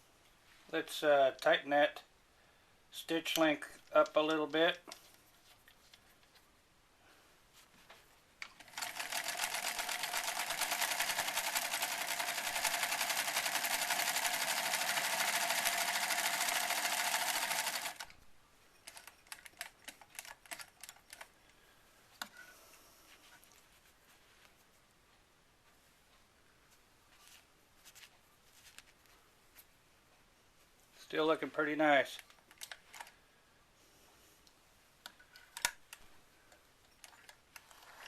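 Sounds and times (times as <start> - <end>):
sewing machine running: 8.6 - 18.1.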